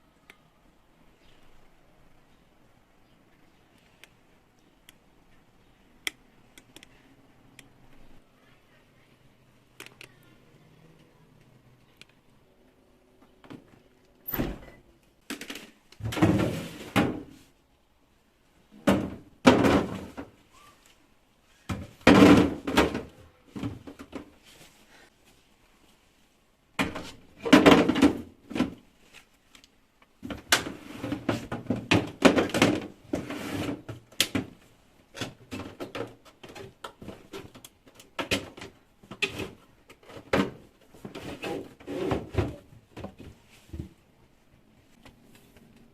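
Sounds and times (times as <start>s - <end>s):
door or drawer opening and closing: 14.3s - 14.8s
household thuds knocks and rustles: 16.0s - 17.4s, 18.8s - 20.4s, 21.7s - 24.8s, 26.8s - 28.8s, 30.2s - 44.1s.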